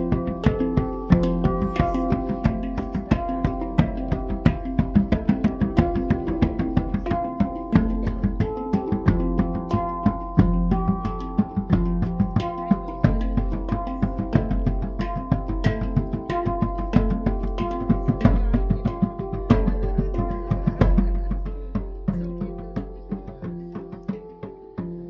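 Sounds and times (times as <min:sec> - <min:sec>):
acoustic instrumental music: 0:00.0 - 0:25.0
hand percussion: 0:00.0 - 0:25.0.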